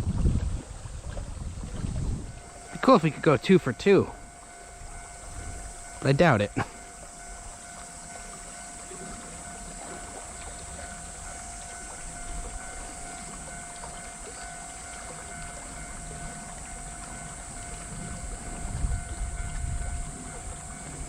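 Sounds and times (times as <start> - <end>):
wind rumble on microphone: 0.0 - 2.8, 4.0 - 7.6, 15.0 - 21.0
constant high-pitched hiss: 0.0 - 21.0
flowing water hiss: 0.0 - 21.0.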